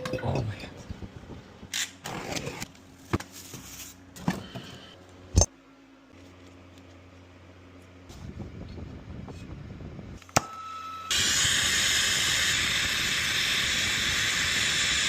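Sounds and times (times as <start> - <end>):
steady low hum: 0.0 - 1.8.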